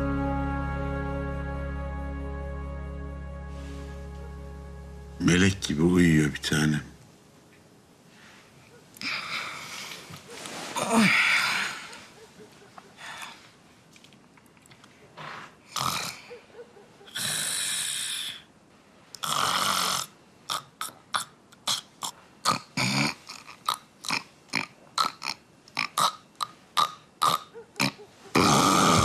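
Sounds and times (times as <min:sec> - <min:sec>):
woman snoring loudly: 0:28.4 - 0:29.0.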